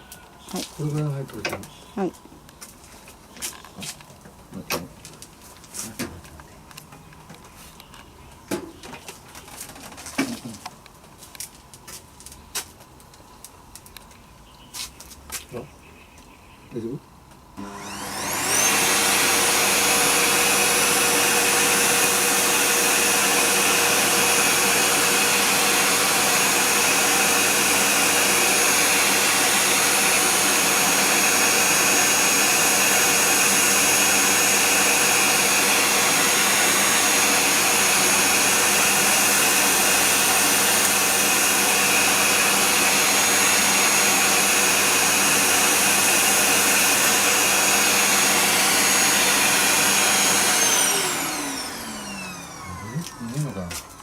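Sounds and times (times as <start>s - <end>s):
vacuum cleaner motor running: 17.6s - 54.0s.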